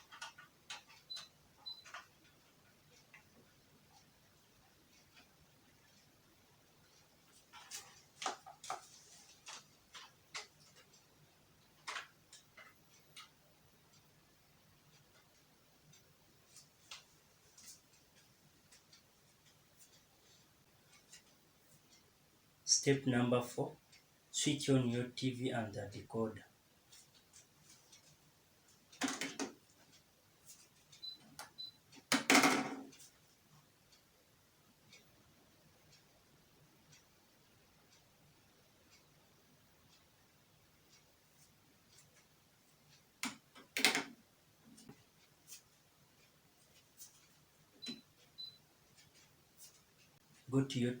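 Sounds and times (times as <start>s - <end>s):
faint high beeps: 47.8s - 48.6s.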